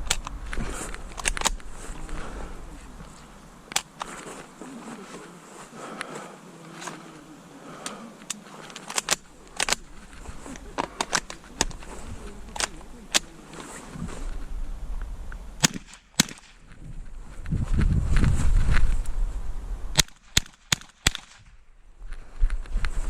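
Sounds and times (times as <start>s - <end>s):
rifle shots cracking: 6.7s - 13.7s, 15.6s - 16.6s, 19.9s - 21.4s.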